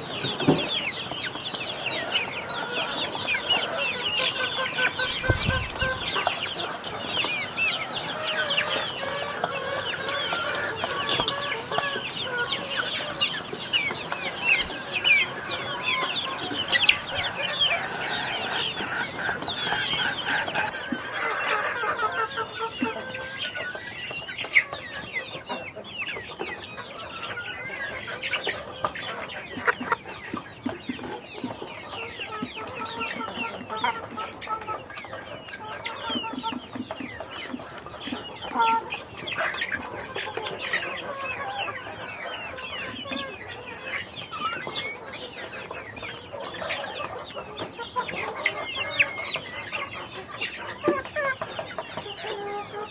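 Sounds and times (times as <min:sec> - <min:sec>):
chicks peeping: 0:00.0 - 0:52.9.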